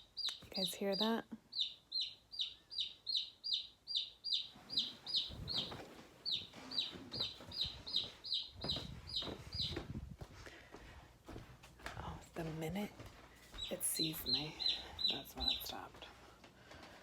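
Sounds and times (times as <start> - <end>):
chick peeping loudly: 0.0 - 10.0, 13.6 - 15.7
low rustling and thumps: 5.3 - 10.4.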